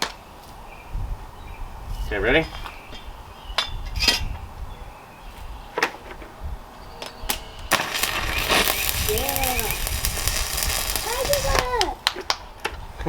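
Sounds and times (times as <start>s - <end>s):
arc welder crackling: 7.7s - 12.4s.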